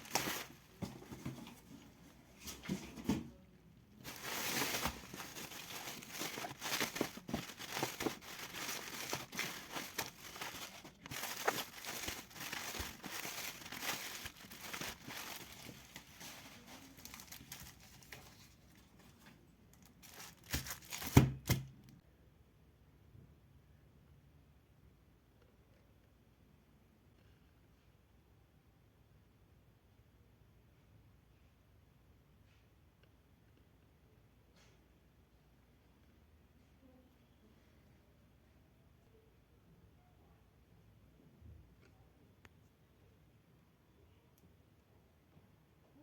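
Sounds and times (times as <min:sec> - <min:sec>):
wrapping tearing and crinkling: 0:00.0 - 0:00.6, 0:04.0 - 0:18.8, 0:19.8 - 0:21.7.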